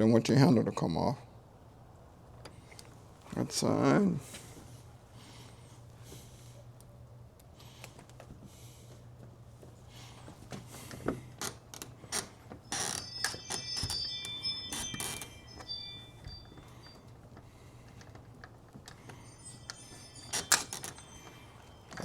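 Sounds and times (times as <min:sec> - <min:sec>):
brief metallic rings: 0:12.8 - 0:17.0.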